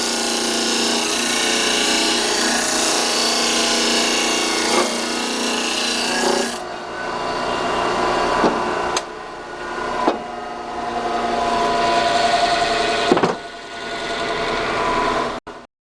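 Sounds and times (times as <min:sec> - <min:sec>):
disc sander rasping wood: 0:00.0 - 0:06.6
sharp knocks: 0:13.1 - 0:13.4.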